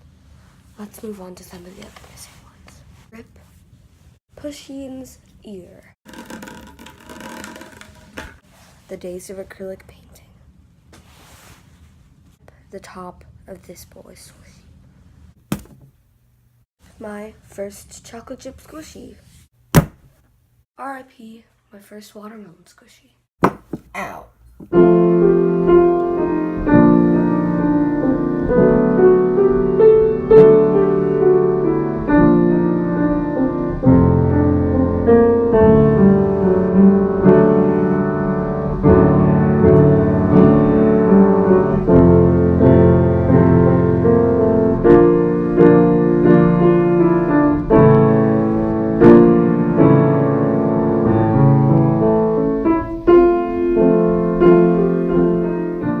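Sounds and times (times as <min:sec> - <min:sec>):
slow piano chords: 0:24.8 - 0:56.0.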